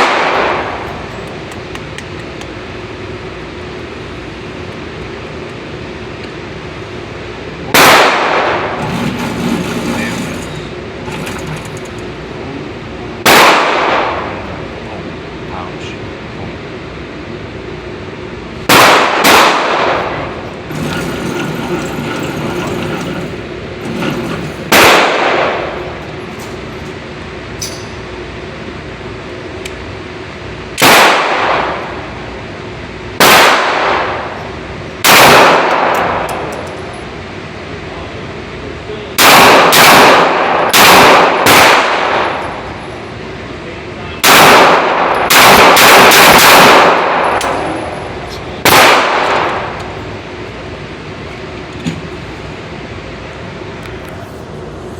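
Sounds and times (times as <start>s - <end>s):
gunshots: 7.8s - 8.8s, 13.2s - 14.2s, 18.7s - 20.1s, 24.7s - 25.6s, 30.8s - 31.8s, 33.2s - 34.2s, 35.0s - 36.0s, 39.2s - 42.4s, 44.2s - 47.4s, 48.6s - 49.6s.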